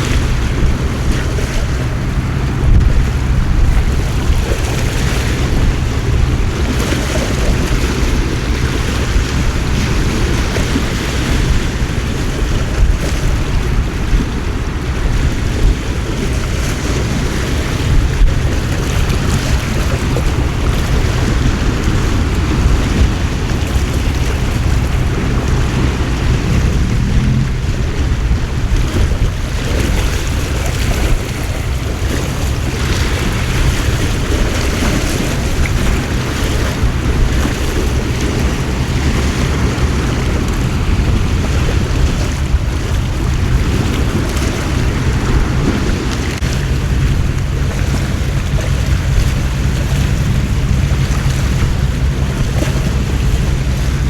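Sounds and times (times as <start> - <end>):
heavy rain and wind: 0.0 - 54.0
wind buffeting microphone: 0.0 - 54.0.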